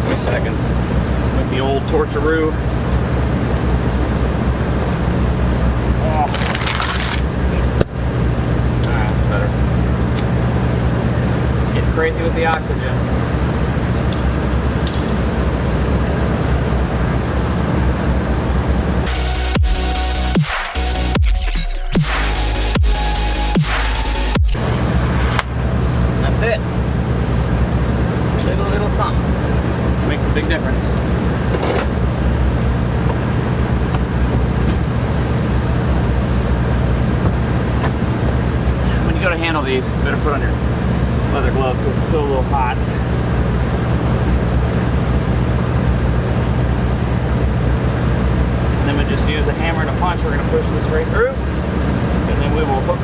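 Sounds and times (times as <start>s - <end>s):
machine engine droning: 0.0s - 53.0s
electronic music: 15.6s - 26.5s.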